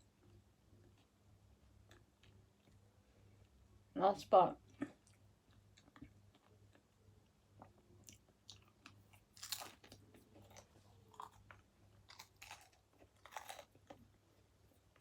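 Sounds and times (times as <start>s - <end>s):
person chewing pizza: 0.2s - 3.6s, 4.9s - 14.2s
crisp crust crunches: 8.5s - 14.0s.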